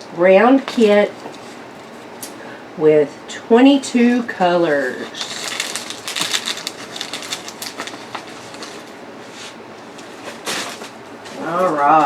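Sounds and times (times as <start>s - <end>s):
plastic bags crinkling and rattling: 0.6s - 2.1s, 4.6s - 9.0s.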